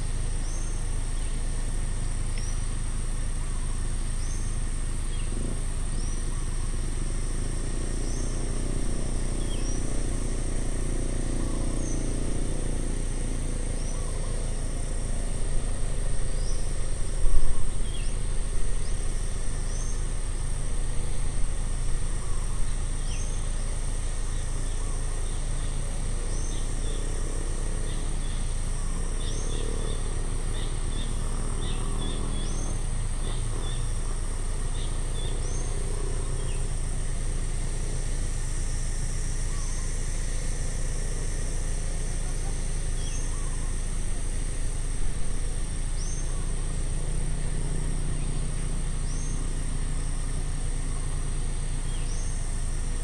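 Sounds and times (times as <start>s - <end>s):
high insect drone: 0.0s - 53.0s
birds chirping: 3.4s - 37.9s, 41.7s - 53.0s.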